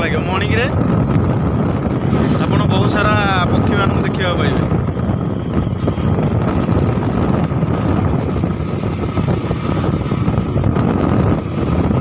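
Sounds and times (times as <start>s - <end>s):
road vehicle running: 0.0s - 12.0s
wind rushing over microphone: 0.0s - 12.0s.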